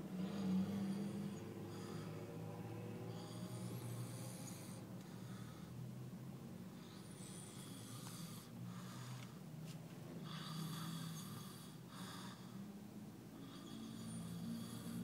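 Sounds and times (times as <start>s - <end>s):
man snoring: 0.1s - 5.6s, 6.9s - 9.0s, 10.2s - 12.6s, 13.4s - 15.0s.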